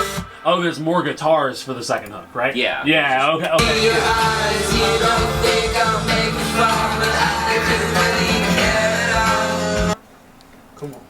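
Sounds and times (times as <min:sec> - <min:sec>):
song with vocals and guitars: 0:03.6 - 0:10.0.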